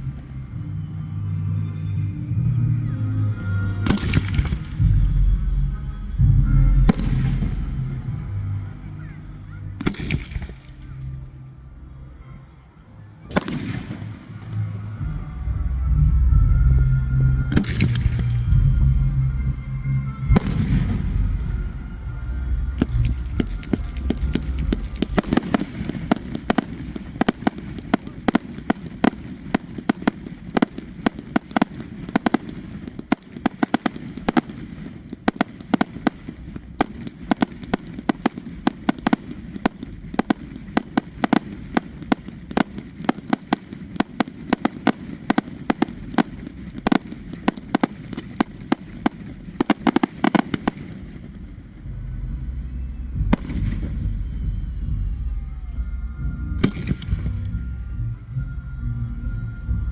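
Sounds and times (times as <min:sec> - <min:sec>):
fireworks crackling: 0:13.3 - 0:15.0, 0:20.4 - 0:21.4, 0:22.8 - 0:51.6.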